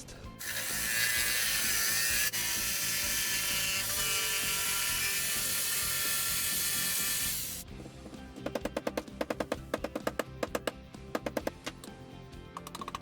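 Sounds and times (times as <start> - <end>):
power tool cutting wood: 0.4 - 7.6.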